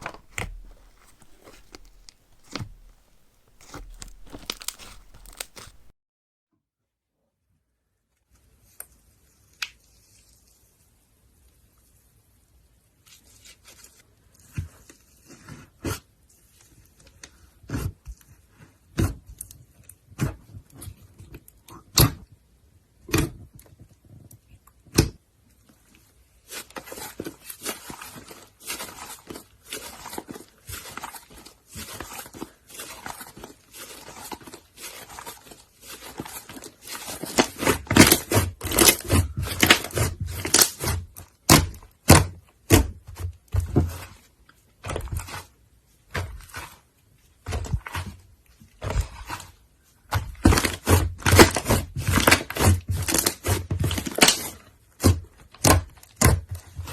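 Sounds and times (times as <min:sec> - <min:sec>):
slime crackles and pops: 0:00.0 - 0:05.9
slime squished by hand: 0:00.0 - 0:05.9
thunks: 0:00.0 - 0:05.9.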